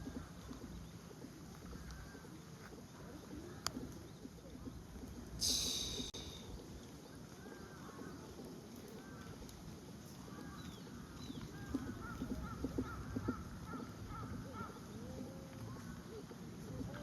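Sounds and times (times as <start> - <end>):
birds calling: 0.0 - 17.0.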